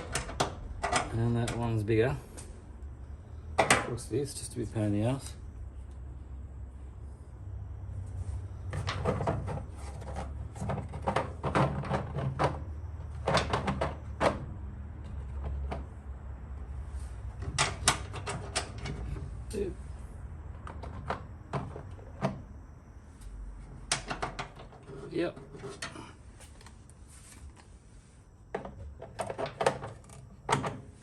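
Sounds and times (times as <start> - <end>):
low steady hum: 0.0 - 31.0
hand tools and metal parts clattering: 8.7 - 16.0, 17.2 - 19.3, 23.7 - 27.7.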